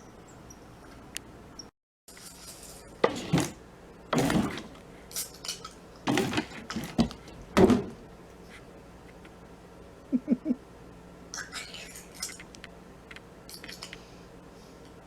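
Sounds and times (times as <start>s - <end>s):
hard objects clattering: 3.0s - 4.9s, 6.1s - 8.1s.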